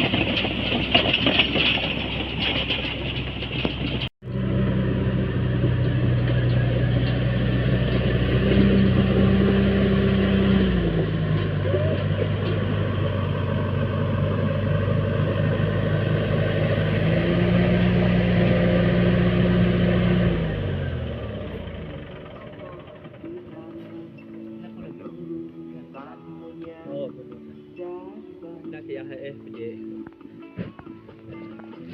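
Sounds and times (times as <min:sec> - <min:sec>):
bulldozer diesel engine under load: 0:00.0 - 0:24.4.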